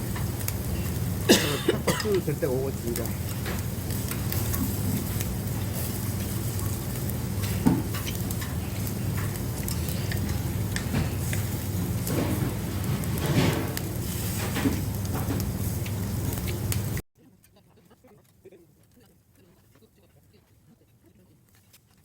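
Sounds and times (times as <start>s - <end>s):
meat sizzling on a grill: 0.0s - 17.0s
steady low hum: 0.0s - 21.6s.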